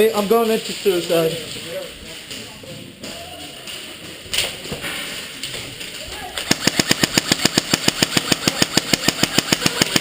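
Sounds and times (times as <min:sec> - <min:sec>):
airsoft gun firing full-auto: 0:06.4 - 0:10.0.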